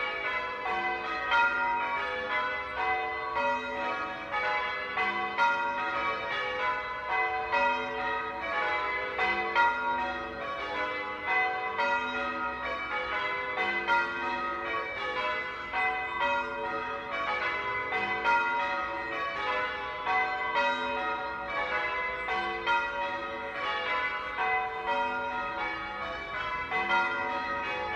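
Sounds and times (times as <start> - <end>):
church bells change-ringing: 0.0 - 27.9.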